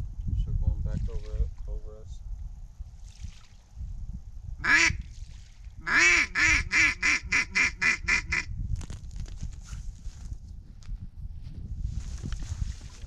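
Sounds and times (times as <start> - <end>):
duck call quacks: 4.6 - 5.0, 5.8 - 8.5.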